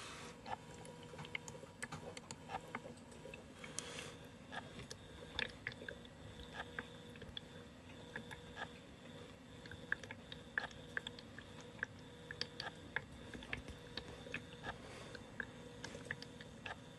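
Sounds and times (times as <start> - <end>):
diffuser humming with steady tones: 0.0 - 16.9
small clicks and pops: 4.6 - 8.8, 9.6 - 14.8, 15.4 - 16.8.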